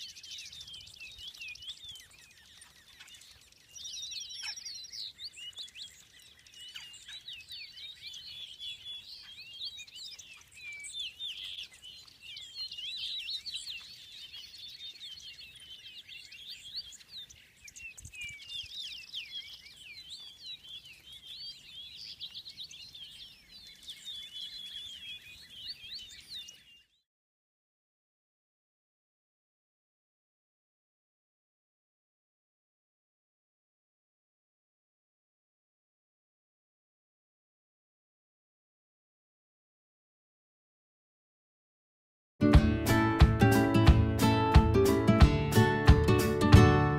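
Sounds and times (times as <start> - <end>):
songbirds chirping and twittering: 0.0 - 27.1, 42.4 - 46.9.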